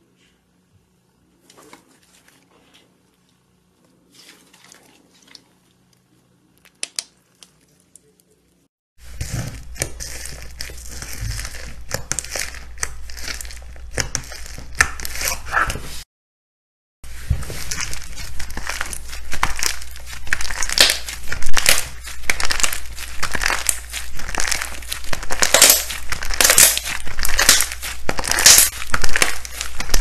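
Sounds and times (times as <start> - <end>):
slime crackling and popping: 9.2 - 15.4, 17.6 - 30.0.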